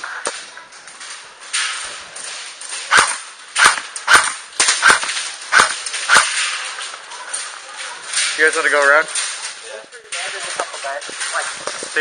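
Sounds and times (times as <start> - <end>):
airsoft rifle shots: 2.9 - 6.6.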